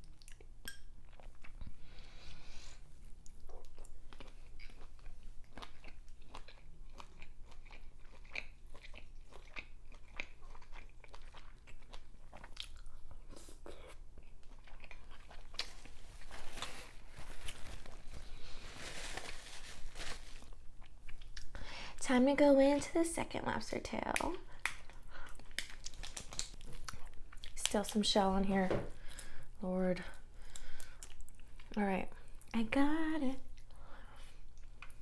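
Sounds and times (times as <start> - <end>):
chewing and biting food: 3.0 - 16.2.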